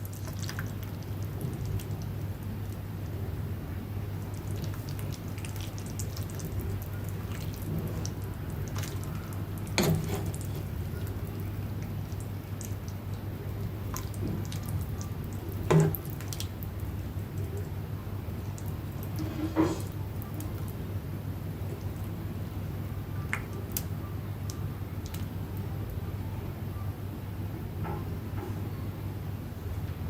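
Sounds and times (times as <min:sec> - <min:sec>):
small liquid drips: 0:00.0 - 0:02.8, 0:04.2 - 0:17.8, 0:18.4 - 0:19.2, 0:23.2 - 0:23.9, 0:24.5 - 0:26.0
steady low hum: 0:00.0 - 0:30.0.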